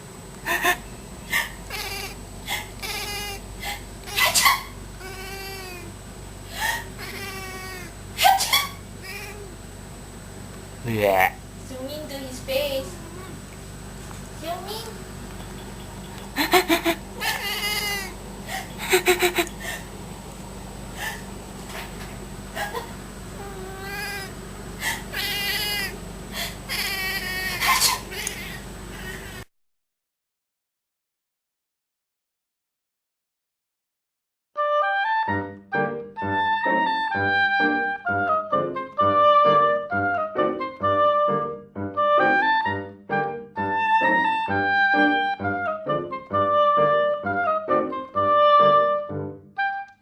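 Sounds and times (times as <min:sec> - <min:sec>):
person fake sneezing: 0:03.6 - 0:04.7, 0:08.2 - 0:08.8, 0:27.6 - 0:28.4.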